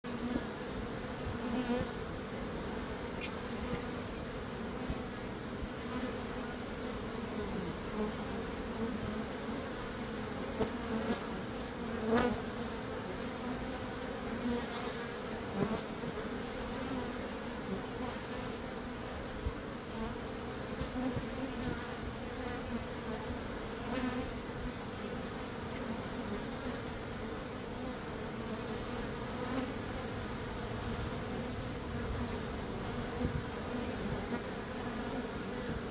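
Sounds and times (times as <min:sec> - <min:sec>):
bees buzzing: 0:00.1 - 0:35.9.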